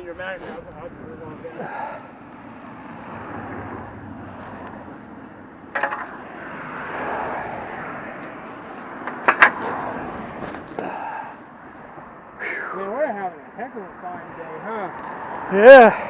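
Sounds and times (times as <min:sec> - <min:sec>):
vehicle going by: 0:00.0 - 0:16.0
sharp knocks: 0:05.7 - 0:06.3.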